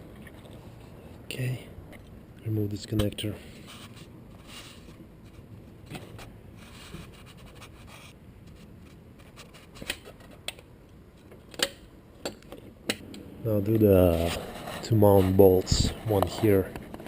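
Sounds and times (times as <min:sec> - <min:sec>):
faint scratching and scraping: 0:00.0 - 0:01.7, 0:02.8 - 0:10.4, 0:13.5 - 0:17.0.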